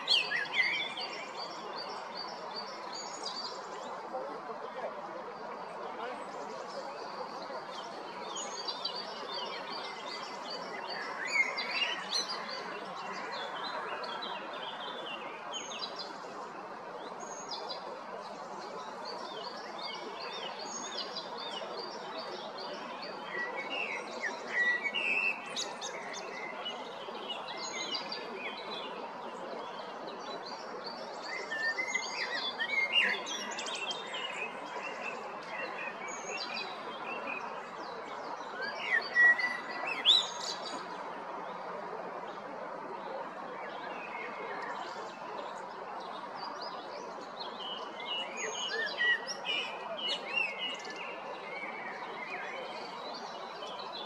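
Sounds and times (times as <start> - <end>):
background noise: 0.0 - 54.0
blackbird singing: 38.6 - 40.7, 47.6 - 50.8.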